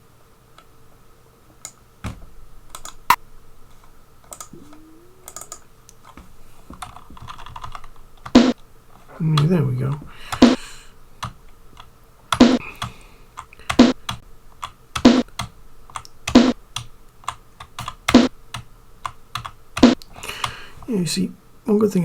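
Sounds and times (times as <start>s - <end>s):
faint steady hum: 0.0s - 22.0s
keyboard typing: 4.3s - 5.6s.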